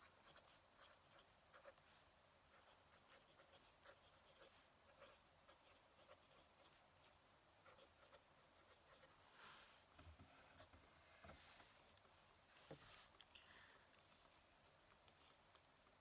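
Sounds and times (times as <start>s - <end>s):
pen nib scratching paper: 0.0s - 9.2s.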